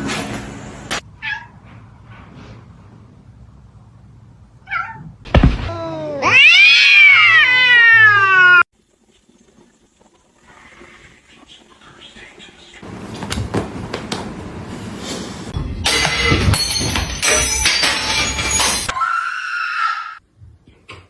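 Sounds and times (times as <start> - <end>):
thump: 5.3 - 5.8
cat meowing loudly: 6.2 - 8.7.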